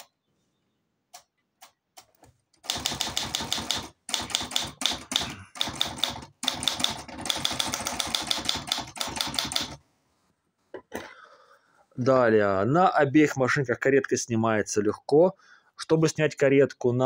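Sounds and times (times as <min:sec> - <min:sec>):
manual typewriter typing: 0:02.6 - 0:09.8.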